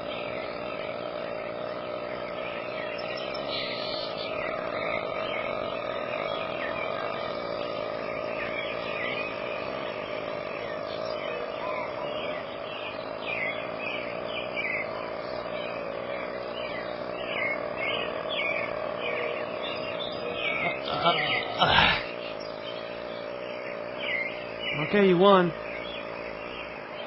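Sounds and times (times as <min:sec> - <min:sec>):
long rattling belch: 0:20.6 - 0:22.2.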